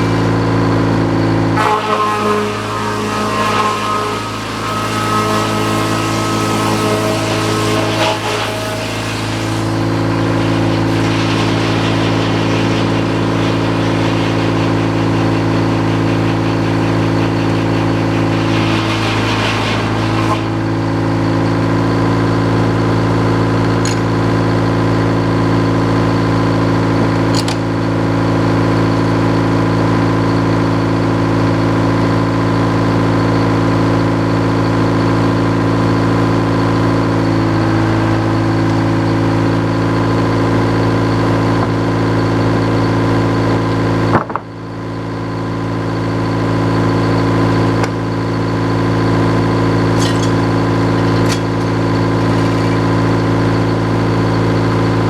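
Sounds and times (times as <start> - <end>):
sawmill engine running: 0.0 - 55.0
blade cutting through wood: 1.6 - 20.8, 49.9 - 53.0.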